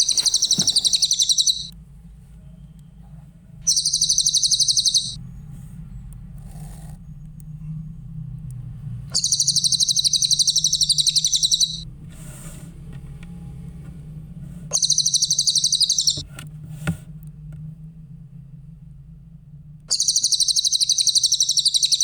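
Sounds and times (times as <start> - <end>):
songbird trilling: 0.0 - 1.7, 3.6 - 5.2, 9.2 - 11.8, 14.7 - 16.2, 19.9 - 22.0
steady low hum: 0.0 - 22.0.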